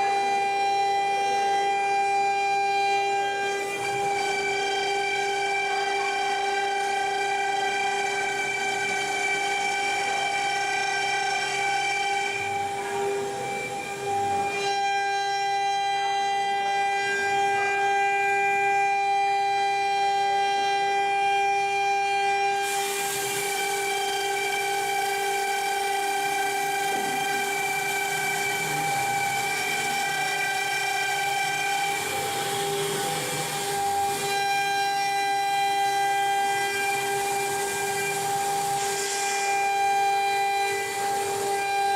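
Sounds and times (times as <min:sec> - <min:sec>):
plasma cutter whine: 0:00.0 - 0:41.9
plasma cutter hiss: 0:22.6 - 0:34.4, 0:35.8 - 0:41.9.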